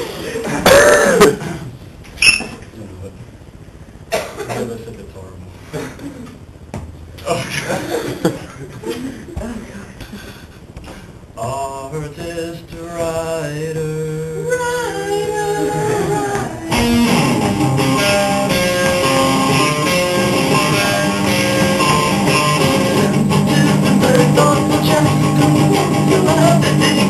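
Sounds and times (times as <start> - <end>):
guitar-led rock song: 15.1 - 27.0.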